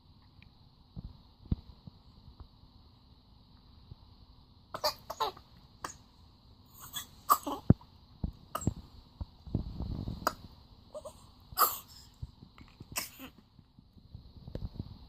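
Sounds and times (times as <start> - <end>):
baby clearing throat: 4.8 - 6.0, 6.8 - 7.7, 8.6 - 8.8, 11.0 - 12.1, 13.0 - 13.4
baby coughing: 4.8 - 6.1, 6.8 - 7.8, 8.6 - 8.8, 11.0 - 12.1, 13.0 - 13.4.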